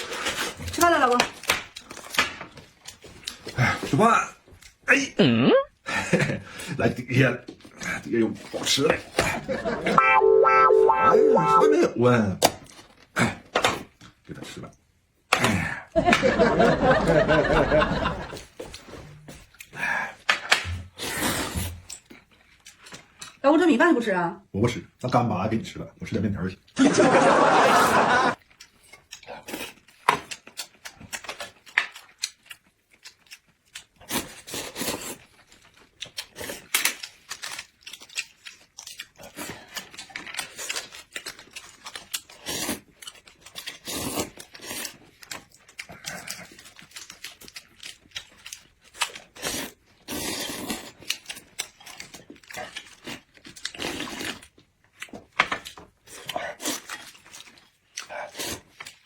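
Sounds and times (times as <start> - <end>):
chewing and crunching: 0.0 - 4.8, 21.6 - 23.4, 28.4 - 59.0.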